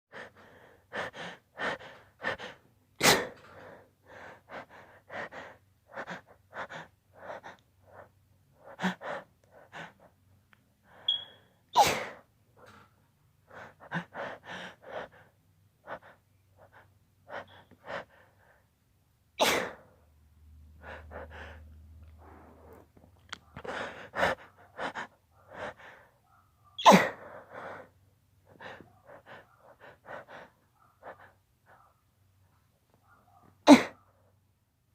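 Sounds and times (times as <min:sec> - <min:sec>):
woman sneezing: 0:03.0 - 0:03.4, 0:11.8 - 0:12.2, 0:19.4 - 0:19.8, 0:26.8 - 0:27.2, 0:33.6 - 0:34.0.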